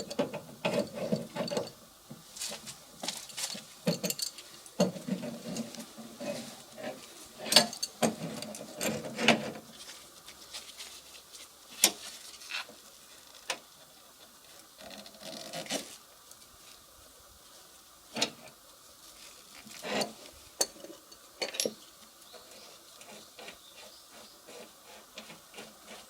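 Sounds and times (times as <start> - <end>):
hand tools clicking and knocking: 0.0 - 1.8, 3.0 - 9.6.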